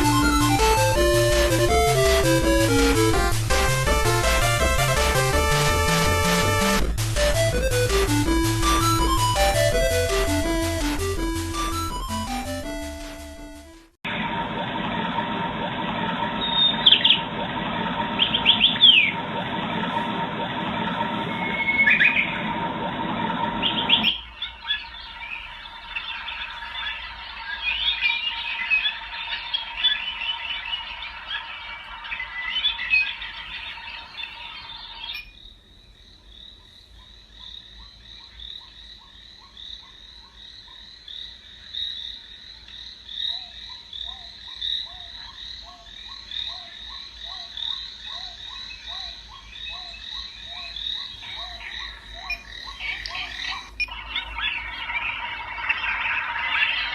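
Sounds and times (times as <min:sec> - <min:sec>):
frogs croaking: 0:23.6 - 0:56.9
chorus of chirping: 0:43.3 - 0:56.9
high chirps: 0:51.1 - 0:56.9.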